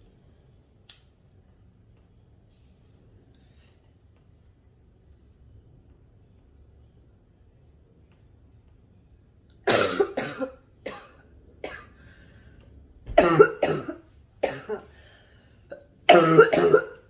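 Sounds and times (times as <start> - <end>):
person coughing: 9.7 - 12.0, 13.2 - 14.9, 15.7 - 17.0.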